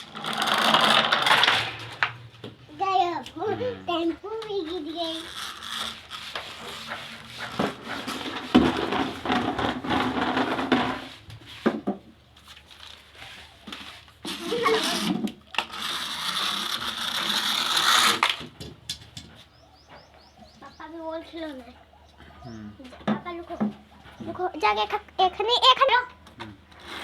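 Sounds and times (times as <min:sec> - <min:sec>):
plastic toy vehicles rattling: 0:00.0 - 0:11.8, 0:12.4 - 0:19.3.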